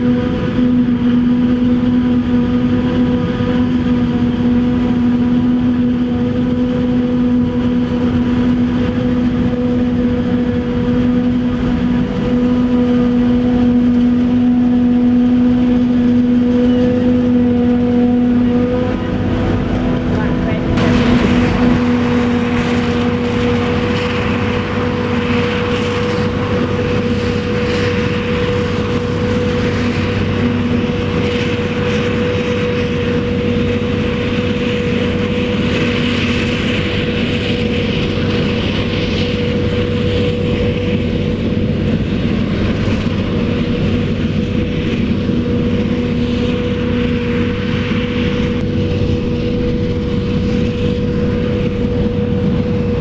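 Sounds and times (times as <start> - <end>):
constant machine whine: 0.0 - 53.0
heavy harvesting machinery running: 0.0 - 53.0.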